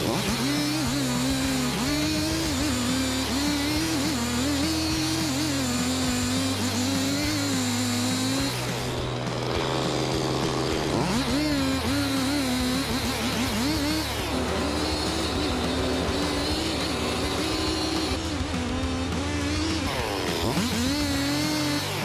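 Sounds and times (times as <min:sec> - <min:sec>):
chainsaw engine at high revs: 0:00.0 - 0:22.0.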